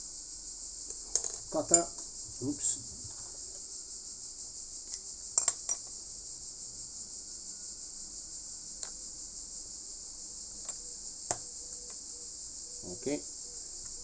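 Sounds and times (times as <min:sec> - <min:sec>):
steady high-pitched hiss: 0:00.0 - 0:14.0.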